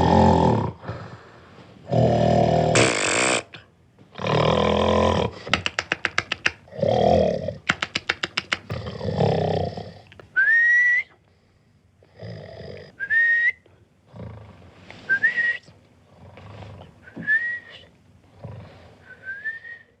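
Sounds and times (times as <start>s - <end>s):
man snoring: 0.0s - 1.2s, 1.9s - 3.6s, 4.2s - 5.4s
rising whistle: 17.1s - 17.8s.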